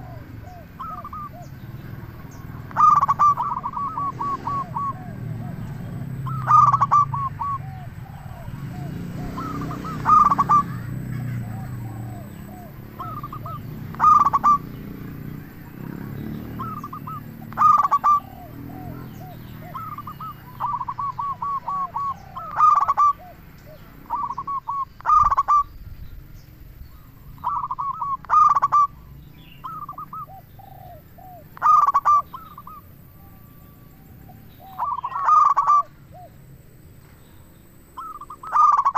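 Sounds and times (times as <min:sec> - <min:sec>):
fainter lower dove coos: 0:00.0 - 0:25.7, 0:27.4 - 0:36.4, 0:38.0 - 0:38.9
dove cooing: 0:00.0 - 0:25.8, 0:26.9 - 0:37.2, 0:37.8 - 0:38.9.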